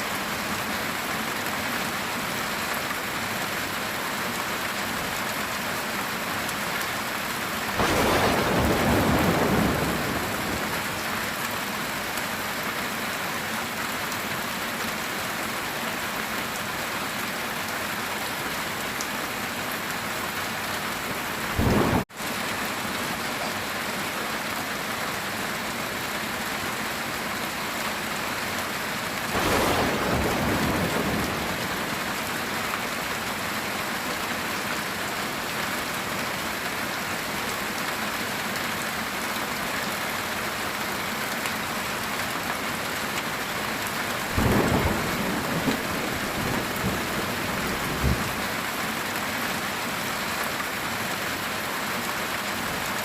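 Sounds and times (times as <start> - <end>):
rain on a tin roof: 0.0 - 53.0
sharp thunder cracks: 7.8 - 11.0, 21.6 - 22.0, 29.3 - 32.1, 44.4 - 48.4
thunder rumbling: 7.8 - 11.1, 21.5 - 22.0, 29.3 - 32.2, 44.3 - 48.4.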